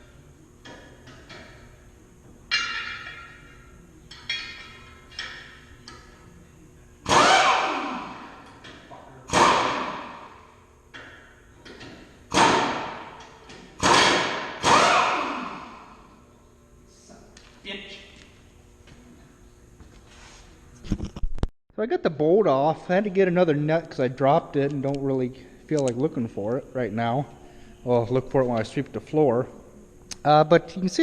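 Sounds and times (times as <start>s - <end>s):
hammer striking steel: 2.5s - 5.5s.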